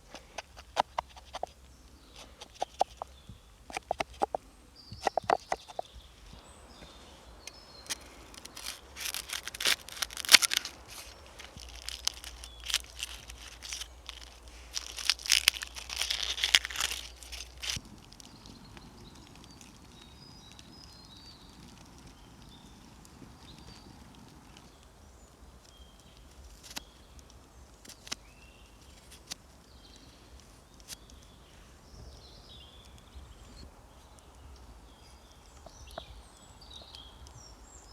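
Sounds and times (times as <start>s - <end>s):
crinkling handling noises: 0.0s - 4.4s, 5.0s - 31.7s
faint bird chirps: 0.8s - 8.8s
sharp clicks: 3.7s - 5.9s.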